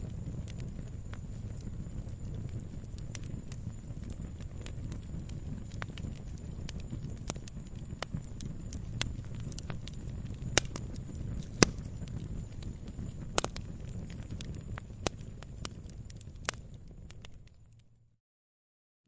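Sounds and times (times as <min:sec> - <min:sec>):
firewood burning with pops: 0:00.0 - 0:18.0.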